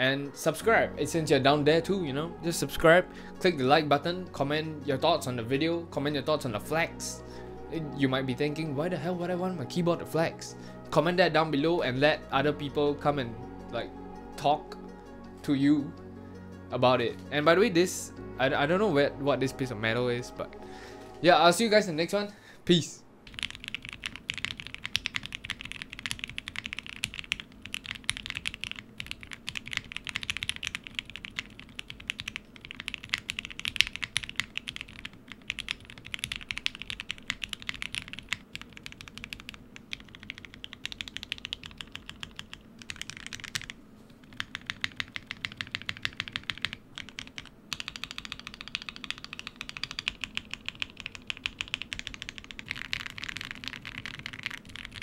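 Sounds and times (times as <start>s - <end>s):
fast typing on keyboard: 23.3s - 55.0s.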